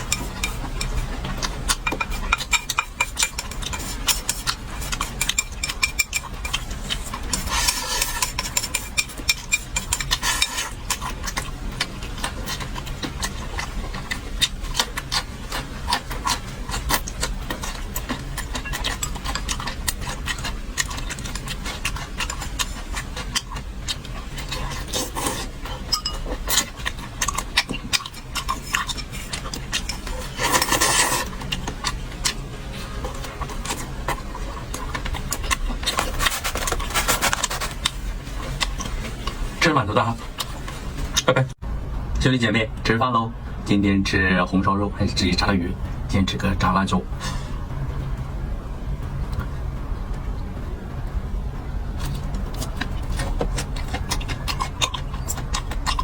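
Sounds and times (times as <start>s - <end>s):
utensils scraping dishes: 0.0s - 11.0s, 24.4s - 26.8s
utensils clicking against dishes: 0.0s - 11.5s, 25.6s - 31.6s
chewing: 0.0s - 41.3s, 52.0s - 56.0s.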